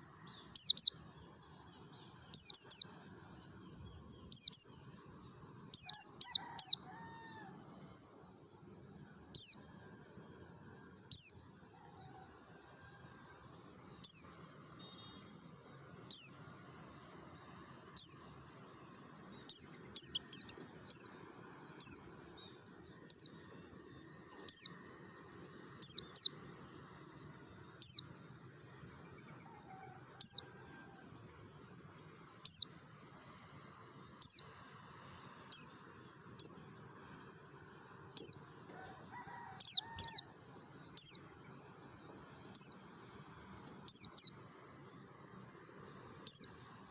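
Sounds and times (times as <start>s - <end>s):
bird singing high-pitched notes: 0.5s - 1.0s, 2.3s - 2.9s, 4.2s - 4.7s, 5.7s - 6.8s, 18.0s - 18.2s, 19.4s - 21.1s, 25.8s - 26.4s, 38.2s - 38.4s, 41.0s - 41.2s, 42.5s - 42.8s, 43.9s - 44.3s, 46.3s - 46.5s.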